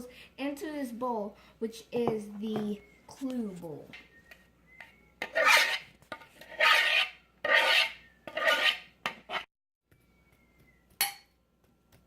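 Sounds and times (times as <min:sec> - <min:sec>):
spoon scraping a bowl: 0:05.2 - 0:09.5.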